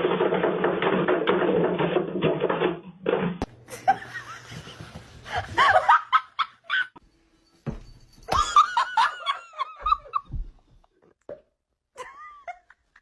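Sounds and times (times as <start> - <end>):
person laughing: 3.7 - 7.0, 12.0 - 13.0.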